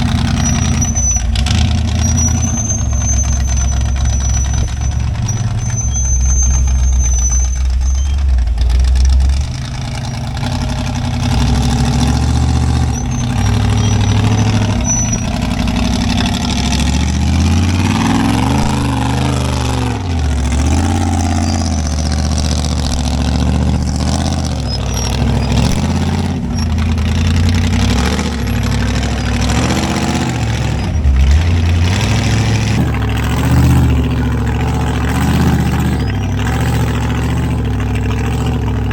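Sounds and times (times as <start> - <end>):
off-road engine revving: 0.0 - 38.9.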